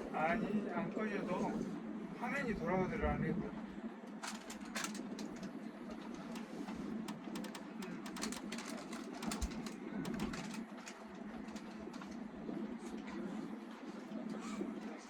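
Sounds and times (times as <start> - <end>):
train carriage hum: 3.5 - 15.0
light clicks and rattles: 4.1 - 12.3.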